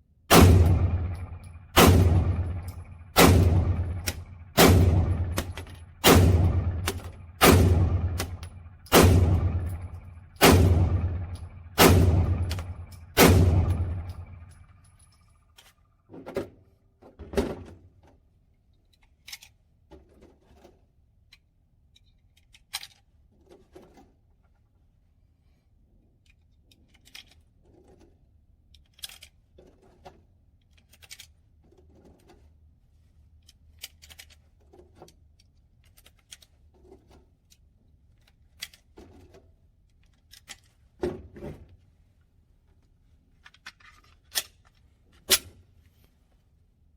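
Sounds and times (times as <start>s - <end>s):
pistol shots with ringing tail: 0.3s - 14.9s.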